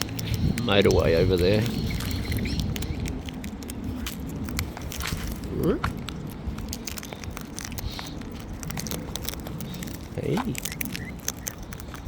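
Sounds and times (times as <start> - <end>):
birds cracking seed: 0.0 - 12.0
distant motorway traffic rumble: 0.0 - 12.0.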